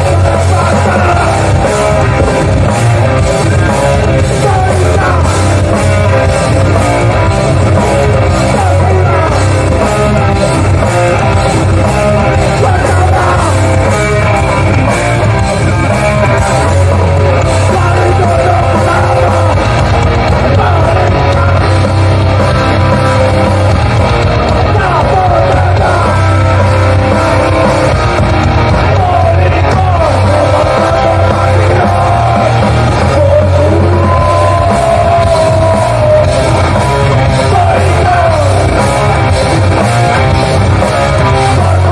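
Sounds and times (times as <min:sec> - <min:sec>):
shouted vocals: 0:00.0 - 0:10.4, 0:24.5 - 0:27.9, 0:28.7 - 0:41.9
live hardcore band playing: 0:00.0 - 0:41.9.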